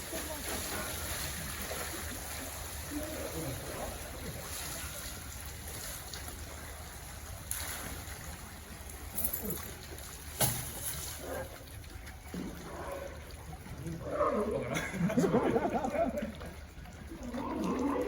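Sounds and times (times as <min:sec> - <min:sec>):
pool water noise: 0:00.0 - 0:18.0.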